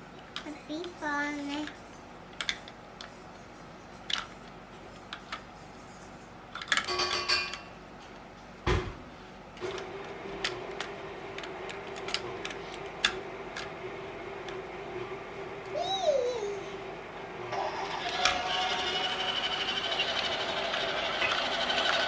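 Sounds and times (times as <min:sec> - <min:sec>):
plastic toy train pieces clicking: 0:00.8 - 0:01.8.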